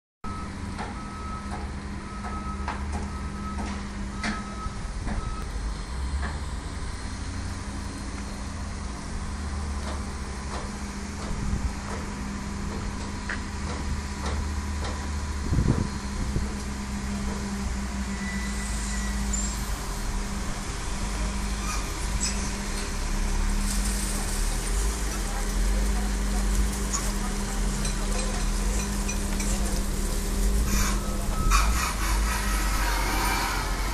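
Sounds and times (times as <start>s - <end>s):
electronic warning beep: 0.2s - 5.5s, 30.9s - 31.8s
machinery humming: 0.3s - 33.9s.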